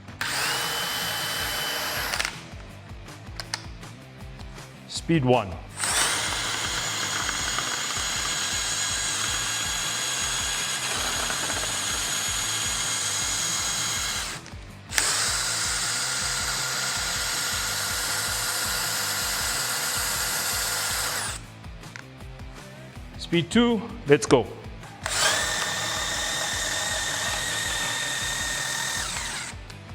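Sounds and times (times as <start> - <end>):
power drill whining: 0.0 - 2.6, 5.7 - 21.5, 25.0 - 29.9.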